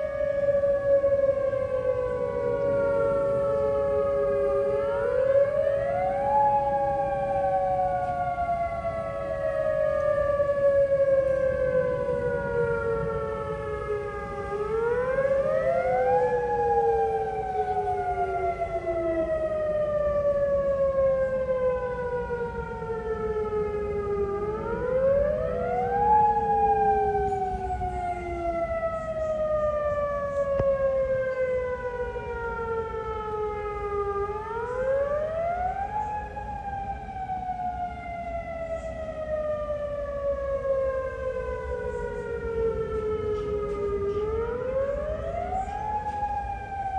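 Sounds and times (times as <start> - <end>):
warning sirens wailing: 0.0 - 46.9.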